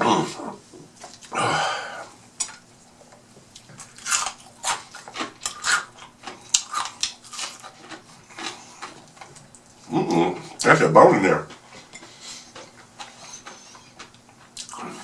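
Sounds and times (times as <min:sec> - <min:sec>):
crunchy chewing and biting: 0:03.5 - 0:10.6.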